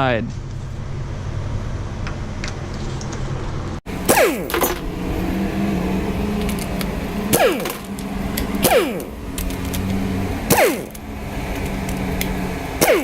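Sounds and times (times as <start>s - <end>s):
steady low hum: 3.8s - 13.0s
power tool whining: 3.9s - 13.0s.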